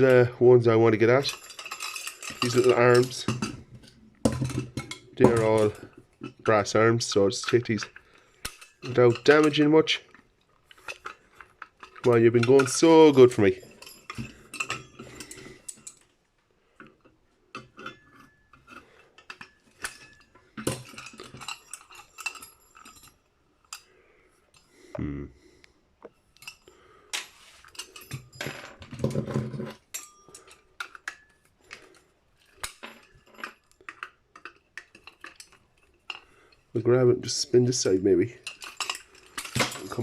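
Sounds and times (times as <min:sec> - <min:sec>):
metal parts clinking and rattling: 0:00.0 - 0:16.2, 0:16.8 - 0:23.9, 0:26.2 - 0:36.7, 0:37.3 - 0:40.0.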